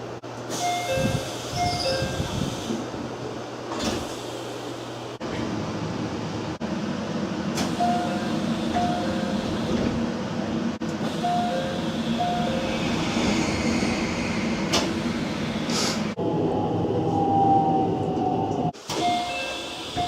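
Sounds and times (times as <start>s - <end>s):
train hum: 0.0s - 20.0s
train door chime: 0.6s - 2.3s, 7.7s - 9.4s, 11.1s - 12.9s, 18.9s - 20.0s
sliding doors working: 10.8s - 16.2s
hiss: 12.6s - 16.2s.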